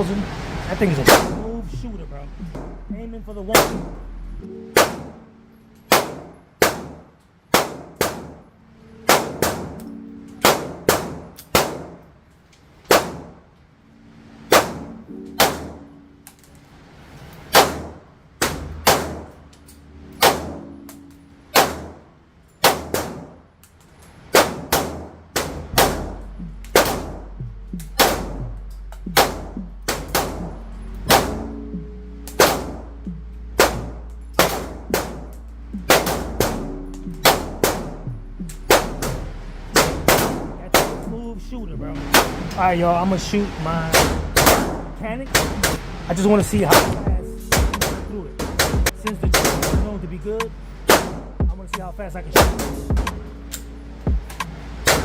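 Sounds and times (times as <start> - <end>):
pistol shots with echo: 4.8 - 5.2, 5.9 - 8.4, 10.4 - 12.1, 12.9 - 13.4, 17.5 - 19.4, 21.5 - 22.0, 22.6 - 23.4.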